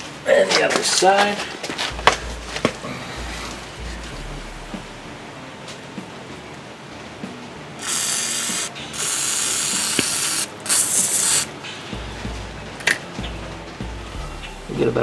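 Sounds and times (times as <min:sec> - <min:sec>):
aerosol spray can hissing: 0:07.8 - 0:11.6.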